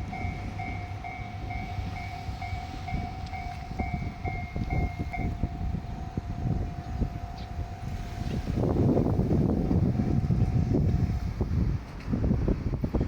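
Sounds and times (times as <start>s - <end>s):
diesel train rumbling: 0.0s - 13.0s
level crossing bell ringing: 0.1s - 8.3s.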